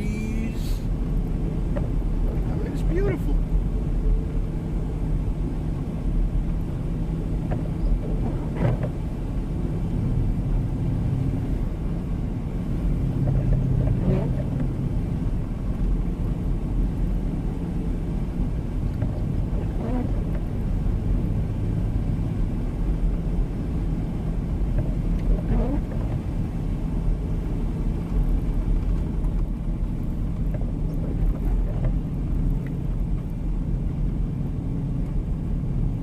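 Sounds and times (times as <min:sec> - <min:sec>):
vehicle engine and tyres on snow: 0:00.0 - 0:36.0.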